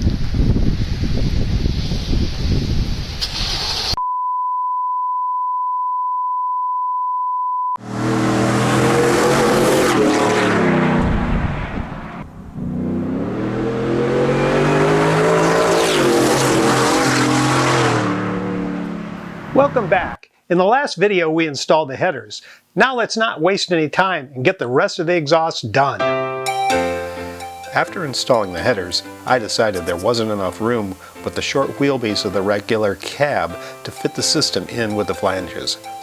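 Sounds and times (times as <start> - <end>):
burst of wind-like noise: 0.0 - 4.0
loud engine revving: 7.8 - 20.2.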